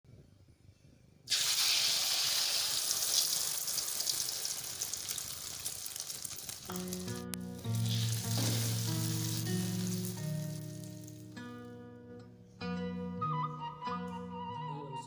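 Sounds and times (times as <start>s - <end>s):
food sizzling in hot oil: 1.3s - 11.4s.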